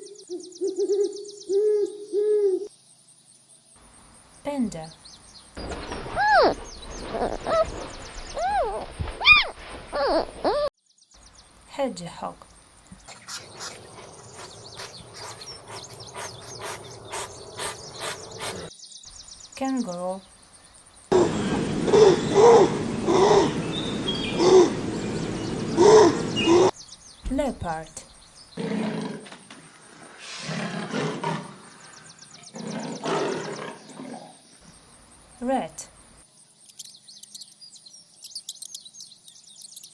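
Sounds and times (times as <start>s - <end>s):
small birds chirping: 3.8s - 28.7s, 31.8s - 39.9s
hedgehog snuffling and sniffing: 11.3s - 20.9s
leopard roaring: 12.9s - 18.7s, 21.1s - 26.7s, 28.6s - 29.4s, 30.2s - 31.8s, 32.5s - 34.4s.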